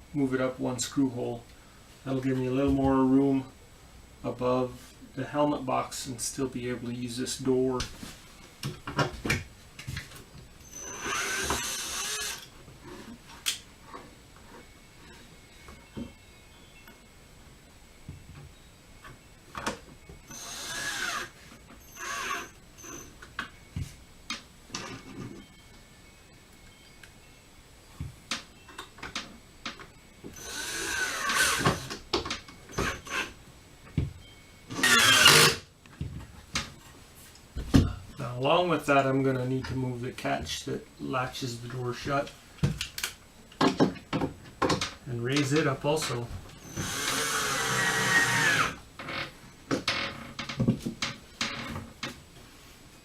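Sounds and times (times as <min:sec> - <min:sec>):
power drill whining: 0:10.6 - 0:12.5, 0:20.3 - 0:23.1, 0:30.4 - 0:32.0, 0:32.7 - 0:33.3, 0:34.7 - 0:35.6, 0:46.6 - 0:48.8.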